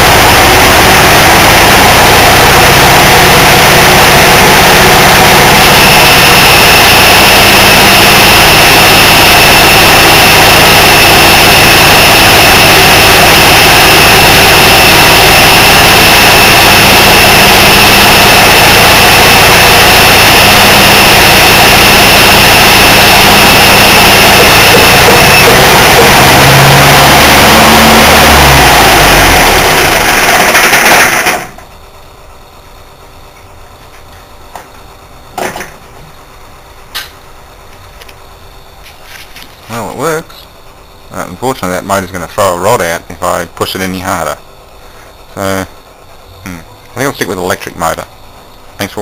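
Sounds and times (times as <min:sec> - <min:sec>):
engine running loudly: 0:00.0 - 0:31.7
high whine: 0:00.0 - 0:49.0.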